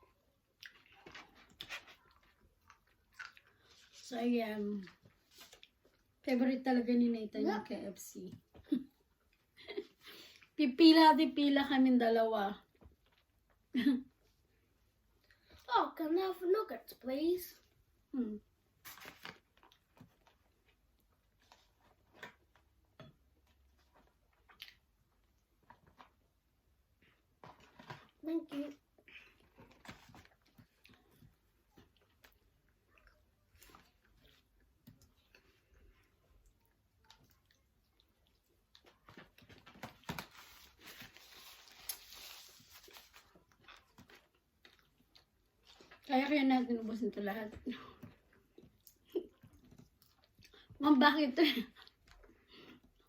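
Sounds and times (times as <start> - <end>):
food packaging rustling: 18.8 - 22.8, 38.8 - 45.0.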